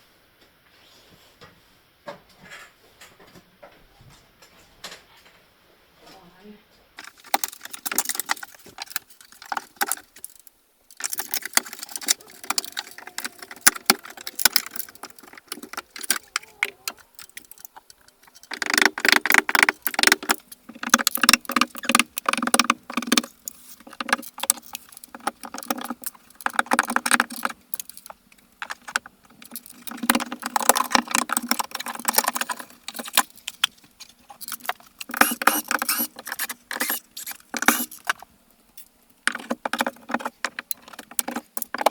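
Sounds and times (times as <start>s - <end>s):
tools clattering and rattling: 7.0s - 38.3s.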